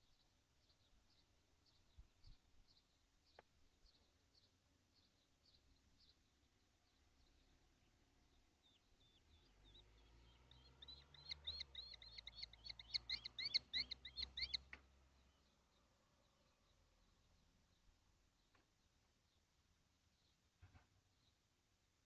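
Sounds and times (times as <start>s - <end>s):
kestrel calling: 8.6s - 14.8s.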